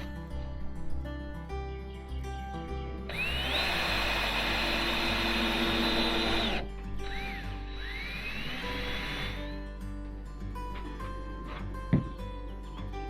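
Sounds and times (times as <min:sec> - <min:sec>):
background music: 0:00.0 - 0:13.0
power drill whining: 0:03.1 - 0:09.6.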